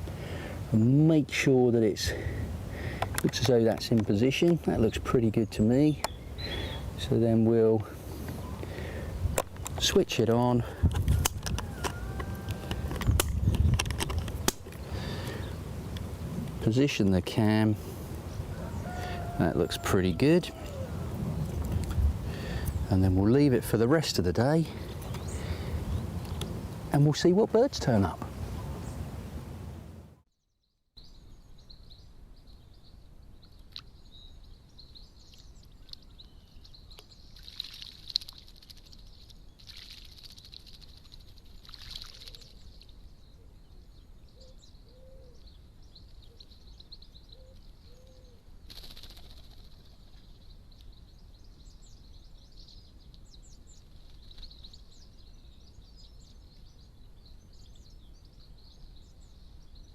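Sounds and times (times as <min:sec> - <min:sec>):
small birds chirping: 0:00.2 - 0:29.1, 0:31.0 - 0:59.9
birds splashing in water: 0:37.3 - 0:42.8.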